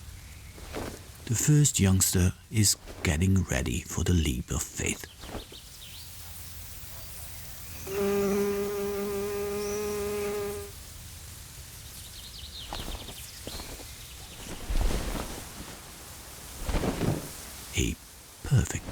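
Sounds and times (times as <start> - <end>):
flying insect buzzing: 5.2 - 11.0, 12.7 - 17.7.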